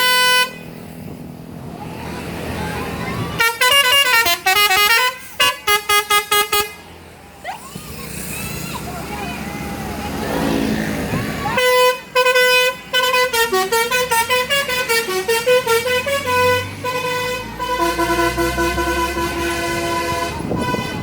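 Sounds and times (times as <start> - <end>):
bus horn playing a tune: 0.0 - 0.8, 3.4 - 6.9, 11.5 - 21.0.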